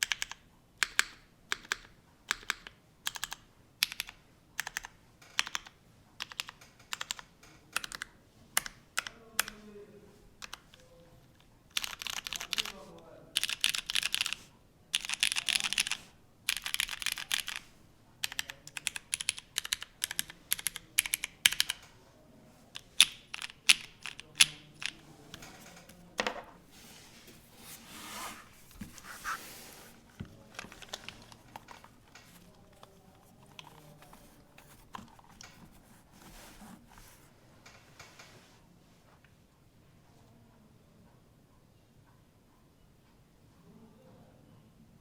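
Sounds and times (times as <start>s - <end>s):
mechanical keyboard typing: 0.0s - 9.6s, 10.4s - 22.0s, 22.8s - 26.0s, 30.2s - 36.0s.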